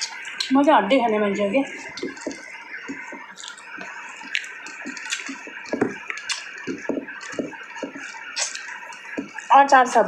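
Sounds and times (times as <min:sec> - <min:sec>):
chewing and crunching bones: 0:01.7 - 0:09.5.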